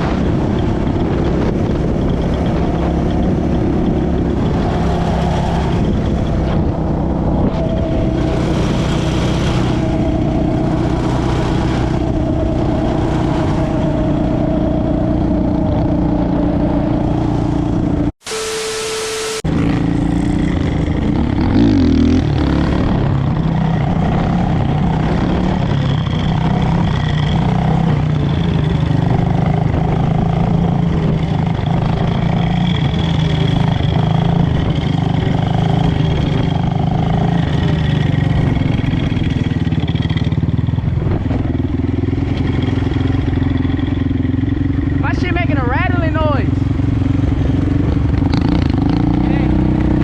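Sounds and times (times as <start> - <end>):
vehicle engine running: 0.0 - 50.0.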